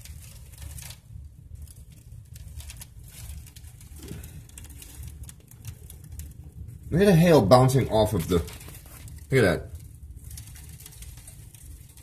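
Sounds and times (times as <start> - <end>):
hail ticking: 0.0 - 12.0
low rumble: 0.0 - 12.0.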